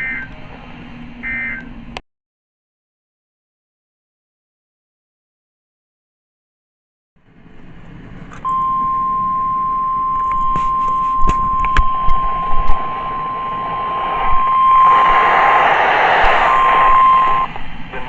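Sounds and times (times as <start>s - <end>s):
steady high alarm tone: 8.5s - 17.5s
hiss: 12.3s - 18.0s.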